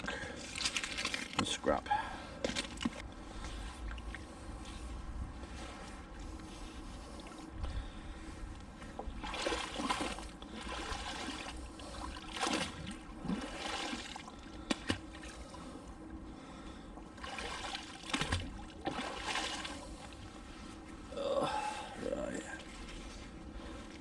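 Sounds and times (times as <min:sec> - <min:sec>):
water splashing and trickling: 0:00.4 - 0:01.8, 0:09.0 - 0:15.6, 0:17.2 - 0:20.4.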